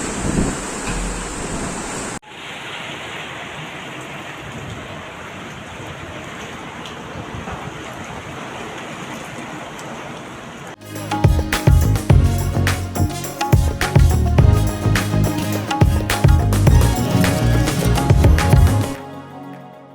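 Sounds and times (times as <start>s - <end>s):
cyclone wind and water rushing: 0.0s - 12.3s.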